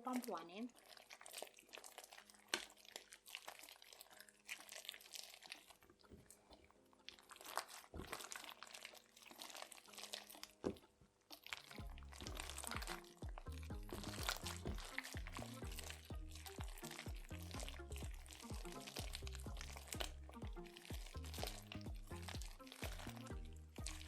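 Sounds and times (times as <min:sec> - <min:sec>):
crunchy slime crackling: 0:00.0 - 0:24.0
music with low bass line: 0:11.8 - 0:24.0.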